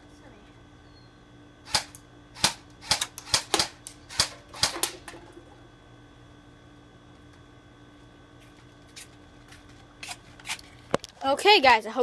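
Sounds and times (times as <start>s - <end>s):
airsoft gun firing: 1.7s - 5.1s.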